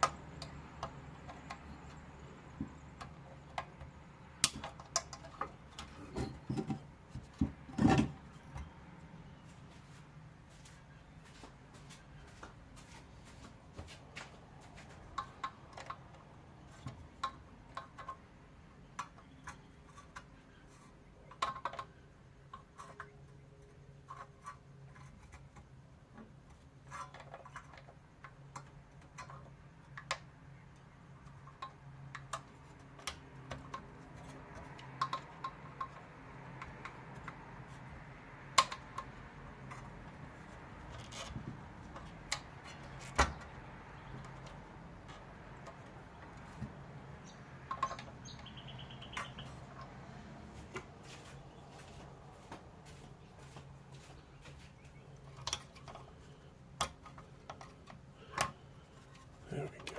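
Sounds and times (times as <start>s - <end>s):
tools clicking on plastic parts: 0.0s - 6.9s, 15.1s - 37.4s, 38.4s - 48.5s, 55.2s - 59.9s.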